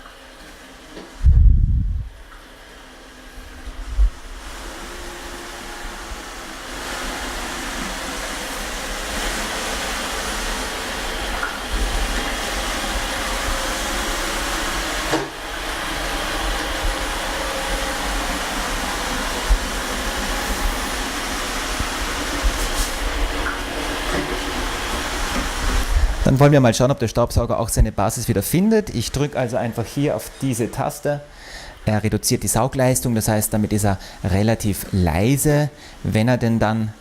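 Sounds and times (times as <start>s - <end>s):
robot vacuum cleaner whirring: 2.2s - 26.3s.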